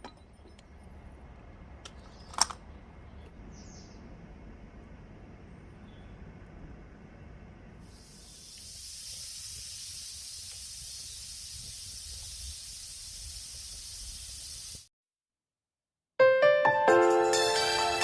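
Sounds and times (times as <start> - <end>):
steam hissing from pressure cooker: 7.8 - 14.9
music: 16.2 - 18.0.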